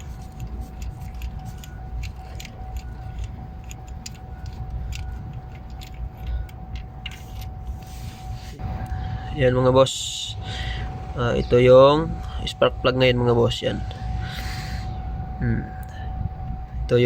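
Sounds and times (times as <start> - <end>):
wrench and socket clicking metal: 0.0 - 7.5
low rumble: 0.0 - 17.0.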